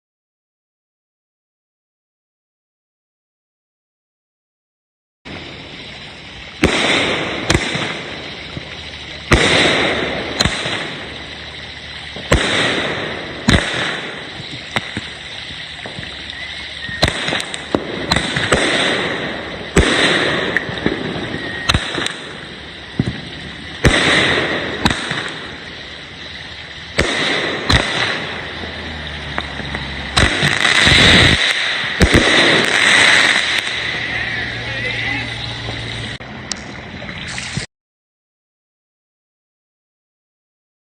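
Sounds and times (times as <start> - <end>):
firework bangs: 5.3 - 36.2
firework crackling: 5.3 - 37.7.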